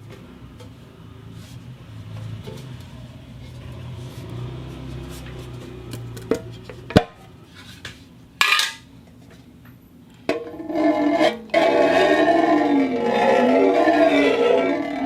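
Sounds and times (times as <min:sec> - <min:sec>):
metal scraping: 0:10.3 - 0:15.0
metallic rubbing squeal: 0:10.6 - 0:15.0.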